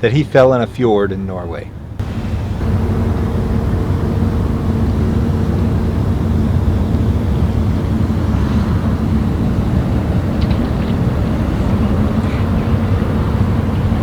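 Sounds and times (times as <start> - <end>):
engine running: 1.0 - 14.0.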